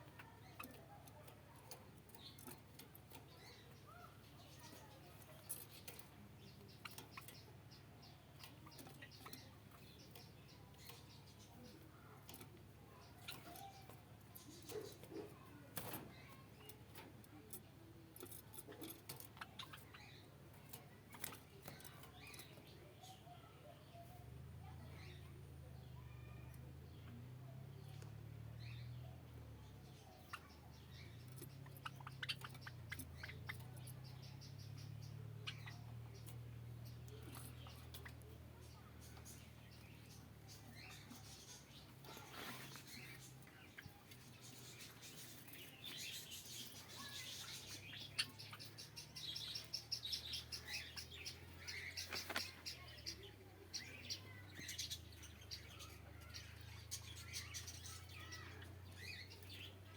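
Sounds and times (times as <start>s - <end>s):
small birds chirping: 0.0s - 59.9s.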